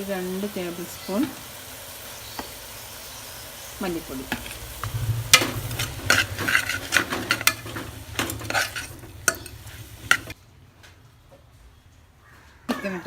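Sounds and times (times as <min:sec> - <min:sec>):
light sizzle: 0:00.0 - 0:10.4
utensil scraping pot: 0:03.8 - 0:10.4.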